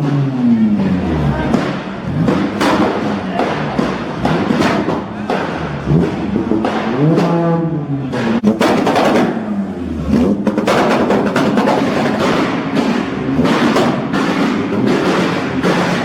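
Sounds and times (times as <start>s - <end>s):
car engine revving: 0.0s - 16.0s
exhaust crackles and pops: 8.1s - 16.0s.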